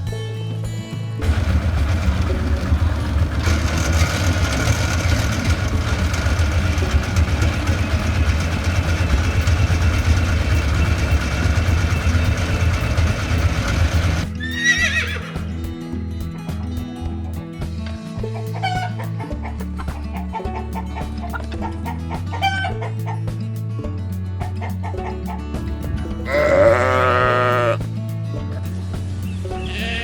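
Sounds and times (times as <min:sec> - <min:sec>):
background music: 0:00.0 - 0:30.0
hen clucking: 0:01.2 - 0:14.2
horse neighing: 0:14.4 - 0:15.4, 0:26.3 - 0:27.8.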